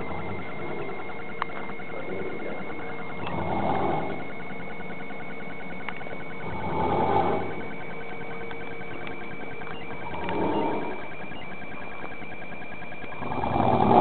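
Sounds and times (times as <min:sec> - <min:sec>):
man snoring: 0:03.2 - 0:04.3, 0:06.5 - 0:07.6, 0:10.2 - 0:11.0.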